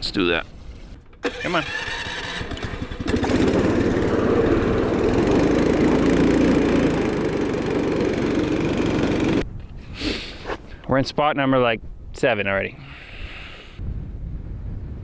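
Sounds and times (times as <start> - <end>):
small motor running: 1.3 - 9.4.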